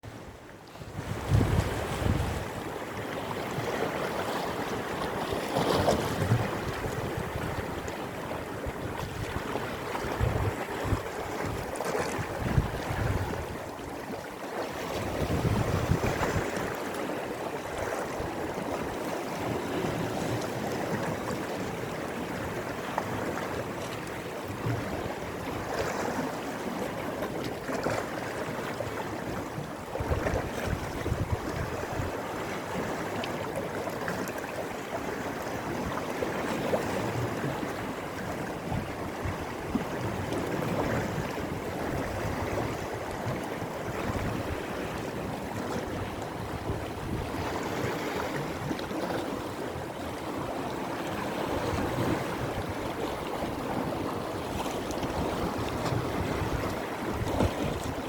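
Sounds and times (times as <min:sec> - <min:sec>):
sea waves washing: 0:00.0 - 0:58.0
wind buffeting microphone: 0:00.1 - 0:02.8, 0:05.6 - 0:13.8, 0:14.9 - 0:16.8, 0:29.9 - 0:32.2, 0:38.3 - 0:49.6, 0:51.1 - 0:58.0.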